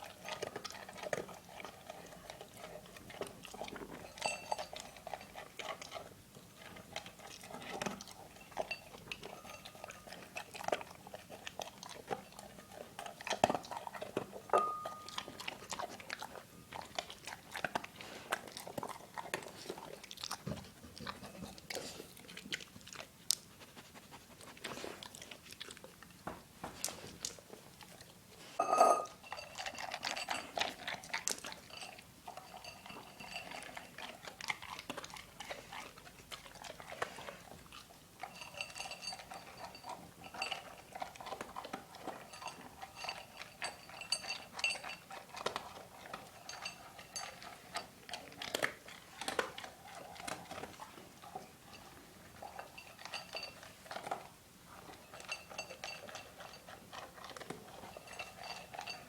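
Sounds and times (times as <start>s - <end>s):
dog crunching and chewing: 0.0s - 59.0s
bowl clinking: 4.0s - 5.1s, 8.2s - 10.2s, 13.3s - 16.3s, 28.6s - 30.9s, 31.6s - 34.0s, 38.2s - 41.2s, 42.0s - 47.9s, 51.7s - 54.3s, 54.9s - 59.0s.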